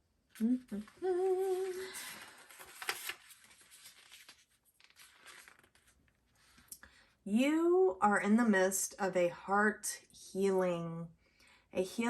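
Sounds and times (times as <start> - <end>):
person humming: 0.4 - 2.0
paper rustling and scraping: 0.8 - 6.6.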